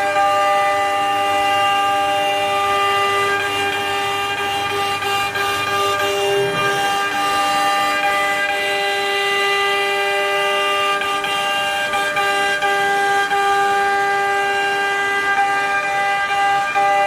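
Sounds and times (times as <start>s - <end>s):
router spindle high-pitched whine: 0.0s - 12.2s.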